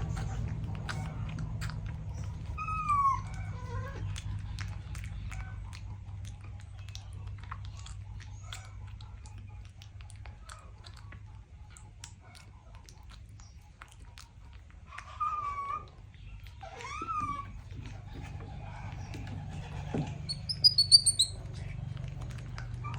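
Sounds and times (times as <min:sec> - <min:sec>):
low steady hum: 0:00.0 - 0:15.2
monkey chewing: 0:00.0 - 0:22.9
monkey high squeaky calls: 0:20.3 - 0:21.4.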